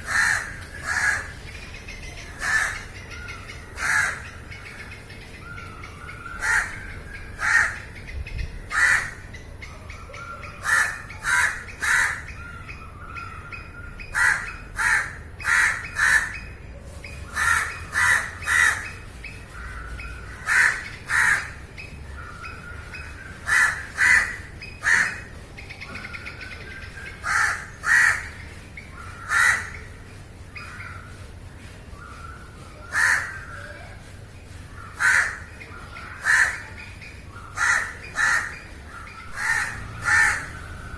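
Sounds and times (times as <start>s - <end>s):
crows cawing: 0.0s - 1.4s, 2.3s - 4.5s, 5.5s - 7.9s, 8.7s - 9.3s, 10.6s - 12.3s, 14.1s - 16.4s, 17.3s - 22.7s, 23.4s - 25.3s, 27.2s - 28.5s, 29.1s - 30.0s, 32.9s - 33.5s, 35.0s - 35.5s, 36.1s - 36.8s, 37.6s - 38.7s, 39.3s - 40.8s.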